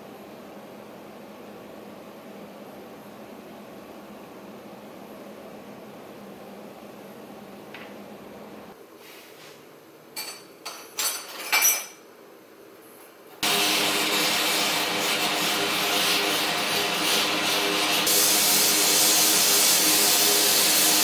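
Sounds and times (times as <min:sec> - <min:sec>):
gas torch hissing: 0:13.4 - 0:21.0.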